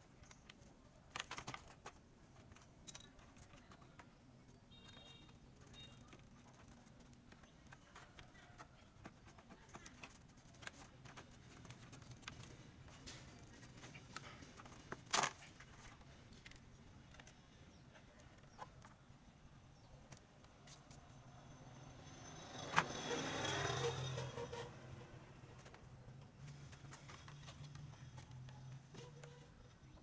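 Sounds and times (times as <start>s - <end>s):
objects clicking and tapping: 0.1s - 19.1s.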